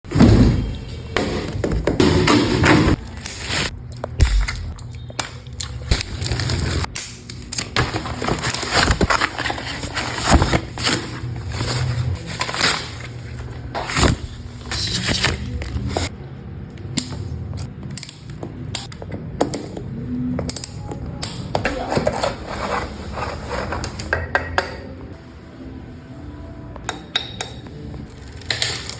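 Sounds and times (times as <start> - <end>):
packaging rustling and scraping: 2.0 - 4.8, 5.6 - 16.1, 21.6 - 24.1, 28.1 - 28.9.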